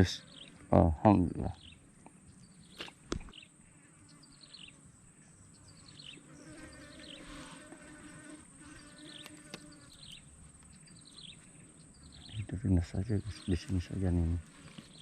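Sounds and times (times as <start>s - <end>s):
high insect drone: 0.0s - 15.0s
flying insect buzzing: 2.6s - 11.7s.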